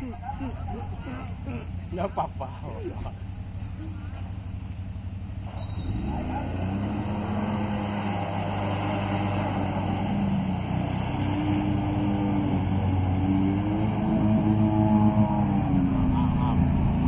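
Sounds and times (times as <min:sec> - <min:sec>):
racing engine revving: 0:05.4 - 0:17.0.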